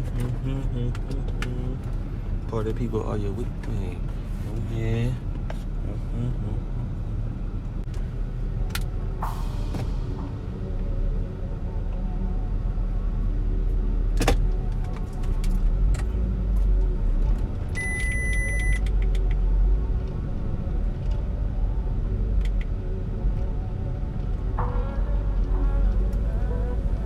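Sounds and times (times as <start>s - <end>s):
vehicle engine and road rumble: 0.0s - 27.0s
electronic beep: 17.8s - 18.8s.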